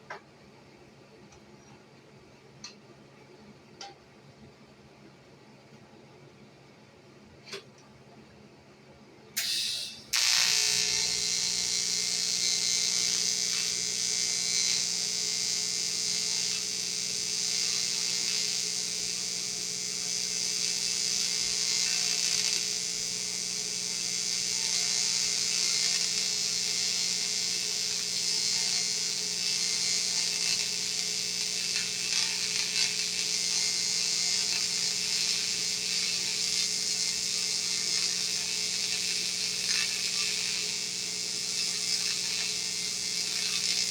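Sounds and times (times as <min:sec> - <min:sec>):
low electrical hum: 0:00.0 - 0:43.9
welding arc buzzing hiss: 0:09.4 - 0:43.9.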